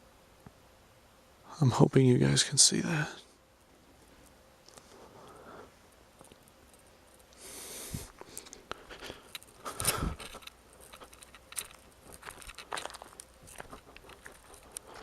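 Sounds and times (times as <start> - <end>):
handling clicks and rustling: 8.3 - 15.0.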